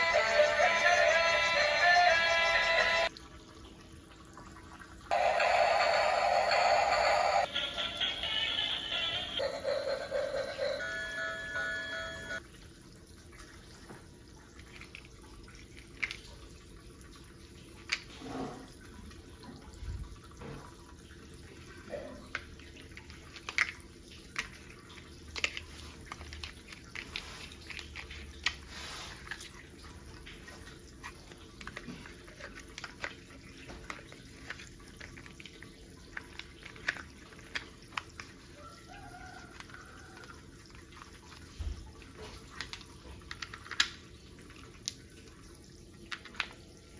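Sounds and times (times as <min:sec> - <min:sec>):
plastic toy pieces clicking: 0:42.6 - 0:44.0.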